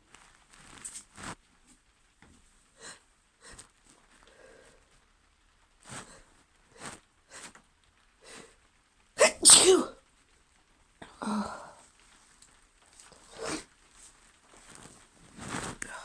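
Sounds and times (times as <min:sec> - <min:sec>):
faint breath sounds: 0:02.8 - 0:05.0
woman sneezing: 0:09.2 - 0:10.0, 0:13.4 - 0:13.6.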